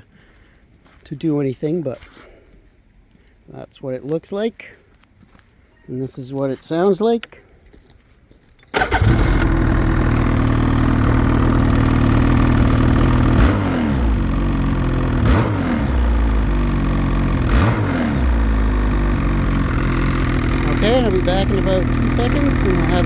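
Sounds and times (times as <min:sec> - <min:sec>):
engine throttle blips: 0:08.8 - 0:23.0
snowmobile engine idling: 0:08.8 - 0:23.0.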